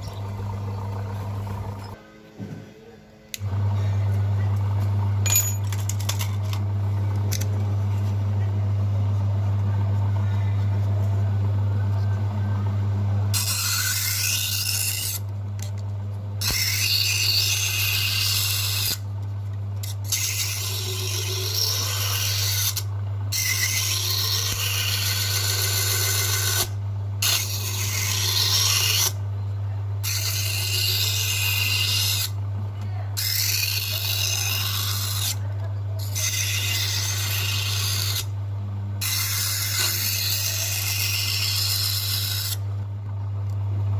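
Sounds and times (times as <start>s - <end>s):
power tool humming: 0.0s - 2.0s, 3.3s - 7.6s, 19.8s - 29.2s, 39.0s - 42.6s.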